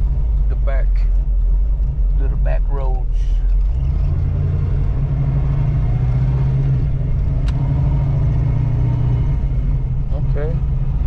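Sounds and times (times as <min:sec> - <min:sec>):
car engine rumbling: 0:00.0 - 0:11.0
sharp click: 0:07.4 - 0:07.7.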